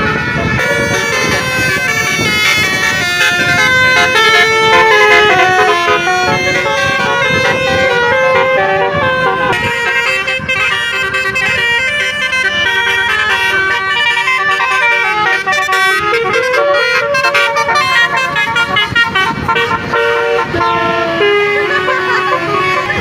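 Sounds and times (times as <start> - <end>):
low rumble of bus: 0.0 - 23.0
musical air horn playing a tune: 0.0 - 23.0.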